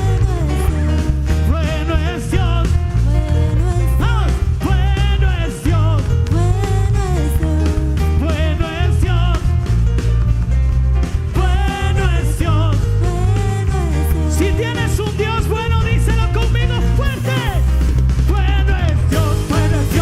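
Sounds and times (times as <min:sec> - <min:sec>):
heavy bass line: 0:00.0 - 0:20.0
live tropical band music: 0:00.0 - 0:20.0.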